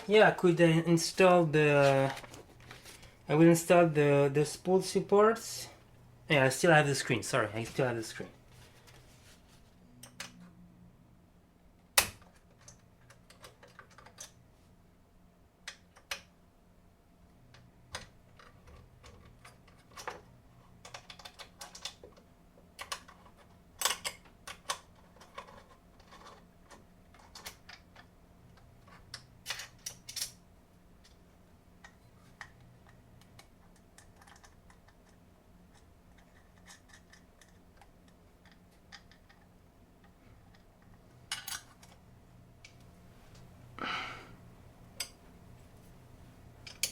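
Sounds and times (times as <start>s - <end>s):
faint low hum: 0.0s - 46.9s
clicks and knocks of parts handled: 12.0s - 14.4s, 17.5s - 30.4s, 31.8s - 42.0s, 46.6s - 46.9s.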